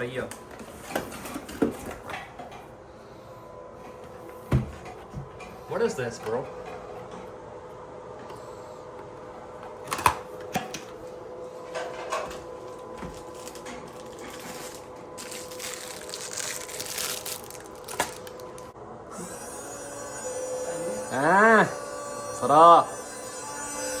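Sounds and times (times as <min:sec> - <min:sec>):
wrapping rustling: 0:12.7 - 0:18.8.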